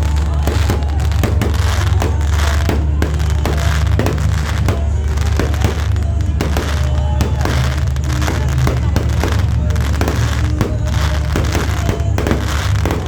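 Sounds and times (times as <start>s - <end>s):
fireworks bursting and crackling: 0.0s - 13.0s
loud music with heavy bass: 0.0s - 13.0s.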